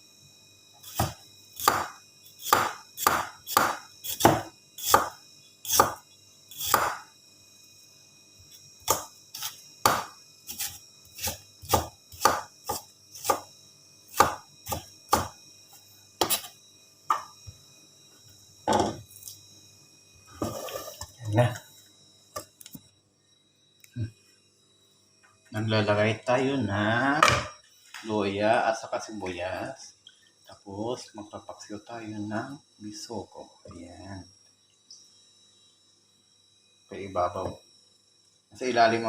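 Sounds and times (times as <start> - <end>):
knife chopping on cutting board: 0.8 - 6.0, 6.6 - 7.0, 8.8 - 13.5, 14.1 - 15.4, 16.2 - 16.5.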